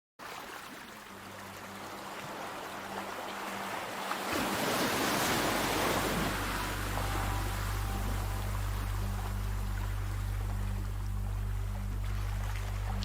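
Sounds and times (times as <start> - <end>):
ocean waves on a shore: 0.2 - 13.0
faint low hum: 1.1 - 13.0.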